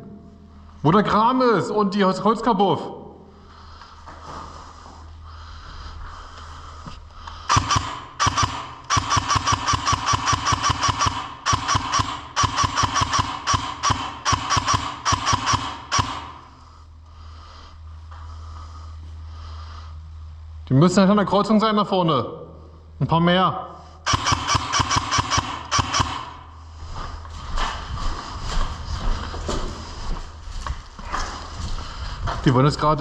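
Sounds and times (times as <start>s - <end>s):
airsoft gun full-auto bursts: 7.5s - 16.5s, 24.1s - 26.5s.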